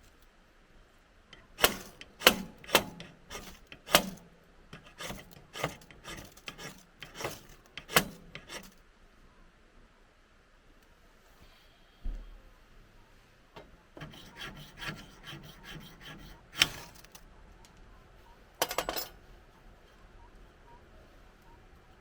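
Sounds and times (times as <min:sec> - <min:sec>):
hand tool rasping scrapes: 0:01.4 - 0:04.2, 0:04.8 - 0:08.8, 0:14.0 - 0:17.2.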